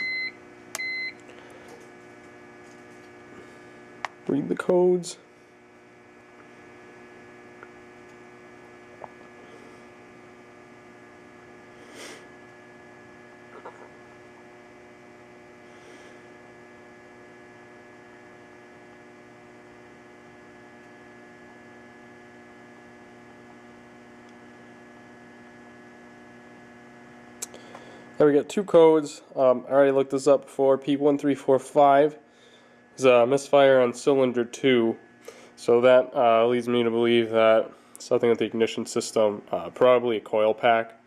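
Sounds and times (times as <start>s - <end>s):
steady electrical hum: 0.0s - 41.0s.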